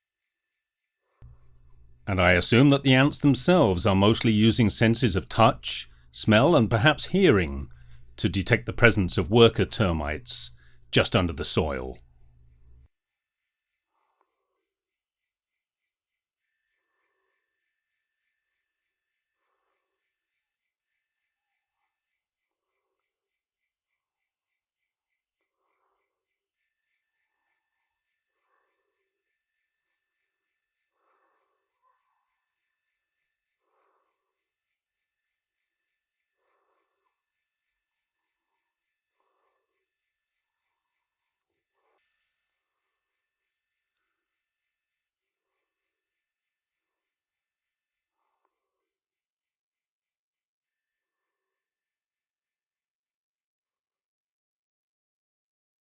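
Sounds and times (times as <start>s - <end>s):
high-pitched insect chirping: 0.2s - 2.1s
insect chirping: 0.2s - 2.7s, 11.6s - 25.2s, 26.0s - 48.0s.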